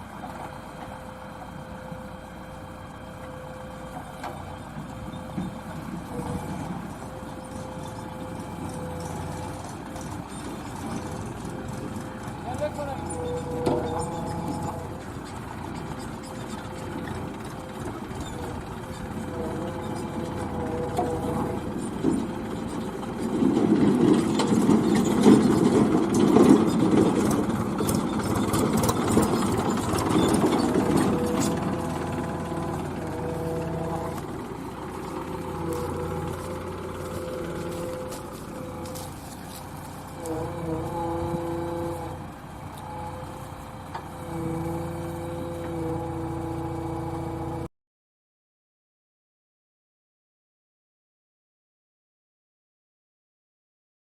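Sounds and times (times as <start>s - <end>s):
diesel engine running: 0.0s - 47.7s
clanks and clicks: 4.0s - 43.2s.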